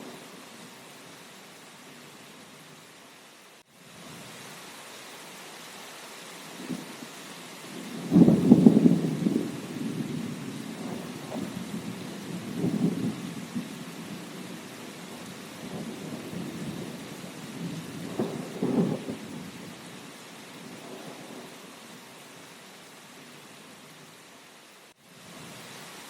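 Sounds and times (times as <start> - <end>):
steady rain hiss: 0.0 - 26.0
rolling thunder: 7.8 - 14.7, 15.6 - 19.7.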